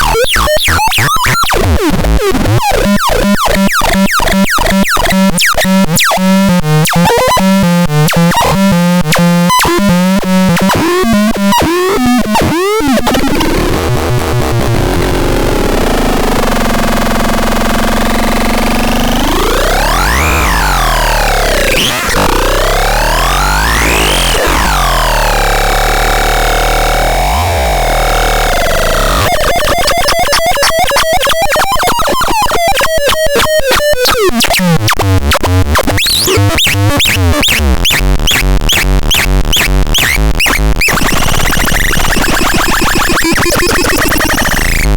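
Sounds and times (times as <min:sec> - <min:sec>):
rapid pulsing electronic tones: 0:00.0 - 0:44.9
electronic pitch sweeps: 0:15.7 - 0:44.9.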